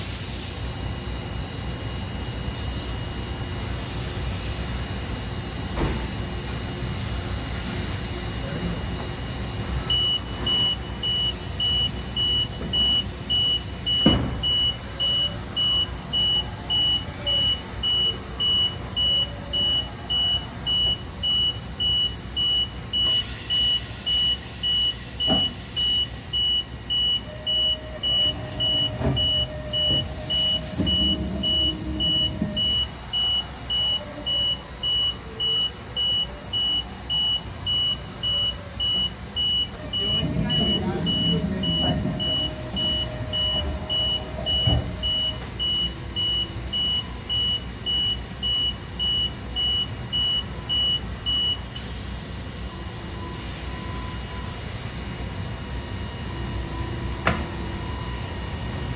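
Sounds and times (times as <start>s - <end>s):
hiss: 0.0s - 0.7s, 23.0s - 25.8s, 51.8s - 54.9s
machine mechanical noise: 7.6s - 51.4s
warning beeper pulsing: 9.9s - 50.9s
machine clunks: 28.1s - 32.9s, 40.0s - 45.5s, 57.2s - 57.6s.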